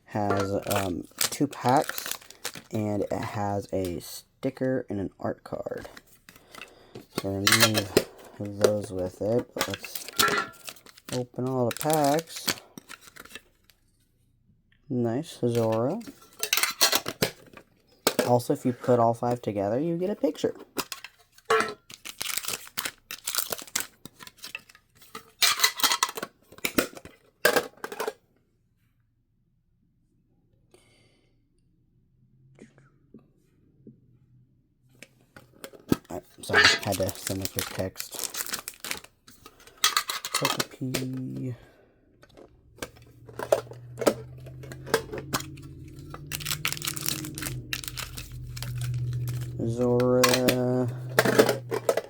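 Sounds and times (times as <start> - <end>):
cards clattering in handling: 0.2 - 2.8, 5.8 - 13.8, 20.7 - 28.1, 35.5 - 41.6, 42.3 - 52.0
foil wrappers ripping and crinkling: 0.2 - 3.1, 7.3 - 13.6, 21.8 - 24.6, 36.4 - 41.1, 42.9 - 52.0
metal tins clicking: 6.4 - 8.8, 9.6 - 13.4, 20.8 - 21.8, 36.4 - 41.1, 42.8 - 52.0
steady low hum: 42.4 - 52.0.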